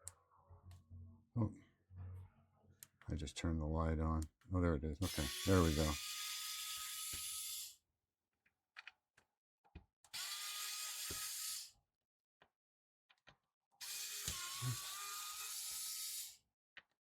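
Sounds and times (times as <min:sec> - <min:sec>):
electric screwdriver motor whine: 0:05.1 - 0:07.8, 0:10.2 - 0:11.7, 0:13.8 - 0:16.4
small clicks and taps: 0:08.8 - 0:09.9.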